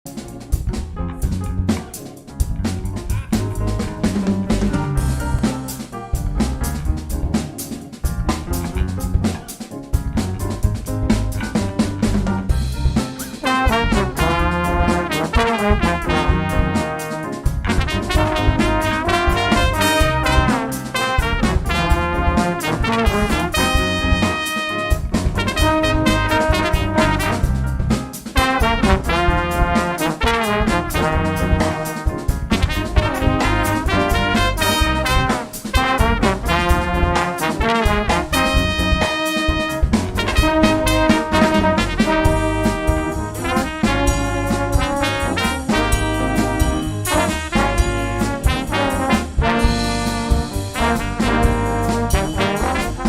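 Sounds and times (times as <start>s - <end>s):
drum kit steady beat: 0.1s - 53.0s
trumpets and trombones: 0.1s - 53.0s
brass instruments sustained notes: 13.0s - 27.6s, 28.4s - 53.0s.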